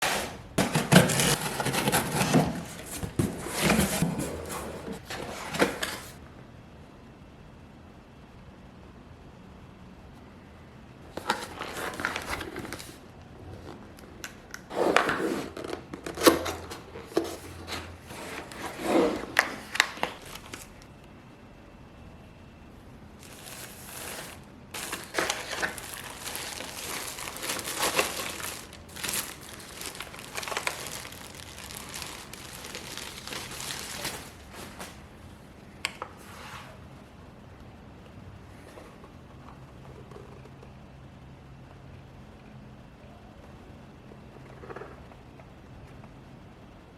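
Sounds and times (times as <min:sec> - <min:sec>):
packaging crinkling and rustling: 0:00.6 - 0:06.2, 0:11.1 - 0:20.9, 0:23.2 - 0:35.0.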